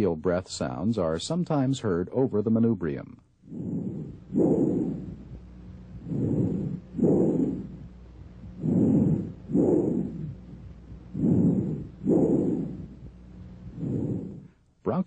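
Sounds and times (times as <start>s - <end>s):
breathing through stethoscope: 3.4s - 14.6s.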